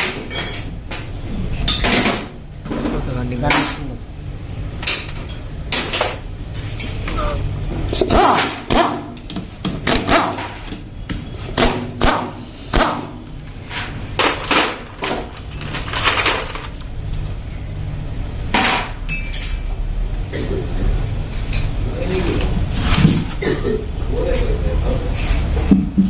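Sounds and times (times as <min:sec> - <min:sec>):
metal tools clanking: 0:00.0 - 0:03.8, 0:13.6 - 0:17.9, 0:18.6 - 0:19.8.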